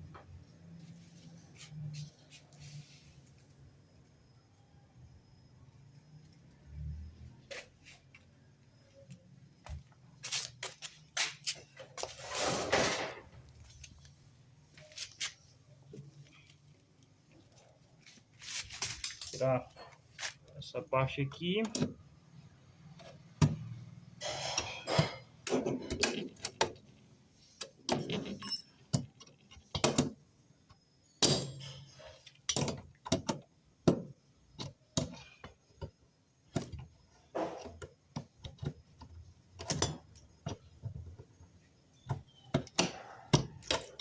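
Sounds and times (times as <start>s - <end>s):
hand tools clicking and clinking: 18.6s - 20.3s, 28.1s - 29.5s.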